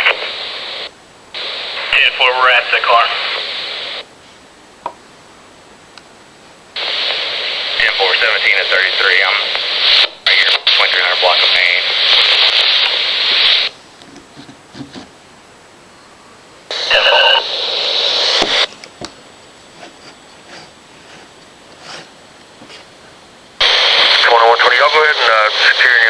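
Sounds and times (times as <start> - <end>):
radio static from scanner speaker: 0.0 - 4.1, 6.8 - 13.8, 16.7 - 18.7, 23.6 - 26.0.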